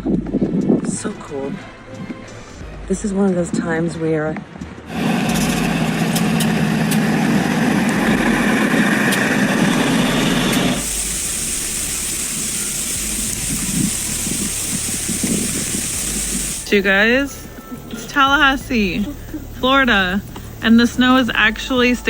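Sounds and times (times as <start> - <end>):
engine-like hum: 4.6 - 22.0
steady high hiss: 4.9 - 22.0.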